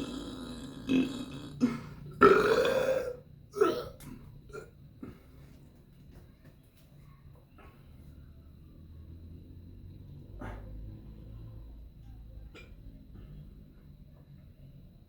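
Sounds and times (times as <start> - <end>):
person burping: 0.0 - 5.2.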